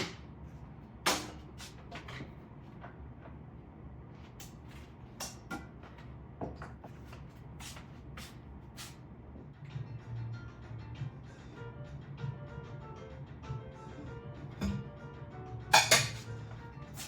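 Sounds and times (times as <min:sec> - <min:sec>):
kitchen items clicking and knocking: 0:15.7 - 0:16.3.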